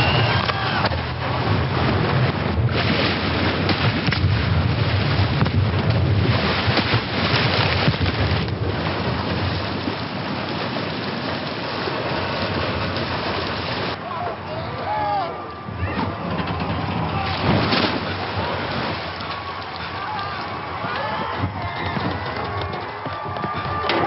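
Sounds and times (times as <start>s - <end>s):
deep rumble: 0.0s - 14.0s
rushing water noise: 0.0s - 24.0s.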